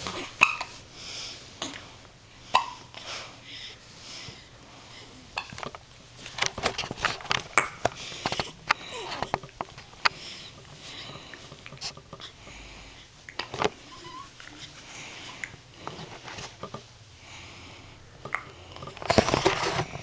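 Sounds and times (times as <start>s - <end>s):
baby breathing softly: 10.0s - 13.2s.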